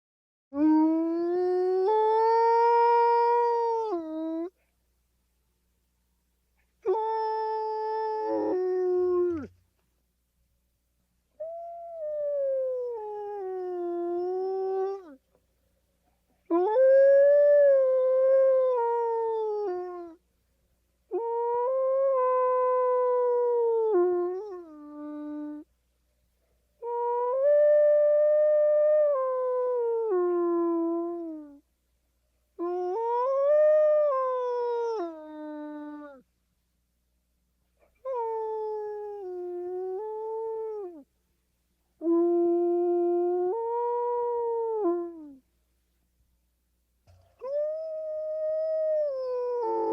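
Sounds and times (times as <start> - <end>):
wolf howling: 6.9 - 9.5, 47.4 - 49.9.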